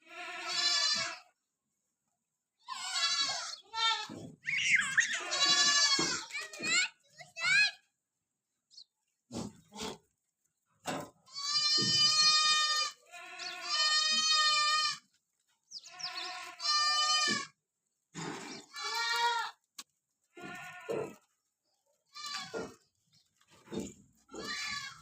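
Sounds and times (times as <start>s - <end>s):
goats bleating: 0.0s - 1.3s, 2.6s - 6.7s, 11.2s - 15.1s, 15.8s - 17.6s, 18.2s - 19.6s, 20.3s - 21.3s, 22.0s - 22.9s, 24.3s - 25.0s.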